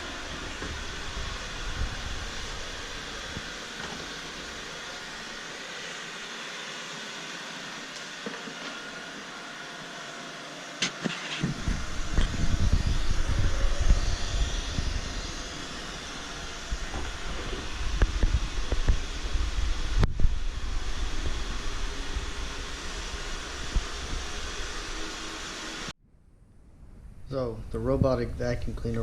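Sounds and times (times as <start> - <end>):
robot vacuum whirring: 0.0 - 25.9
low rumbling and thumps: 11.4 - 24.4.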